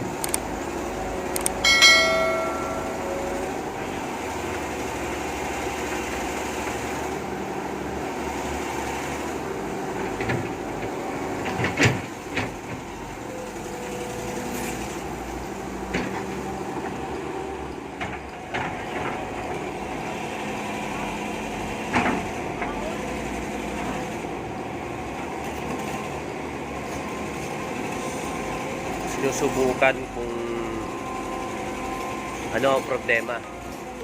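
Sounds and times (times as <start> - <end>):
excavator running: 0.0 - 34.0
sharp metallic knocks: 1.6 - 3.6.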